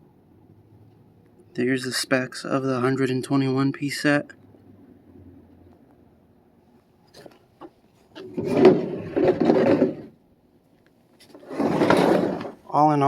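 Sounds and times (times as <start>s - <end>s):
case scraping across surface: 8.2s - 10.2s, 11.2s - 12.7s.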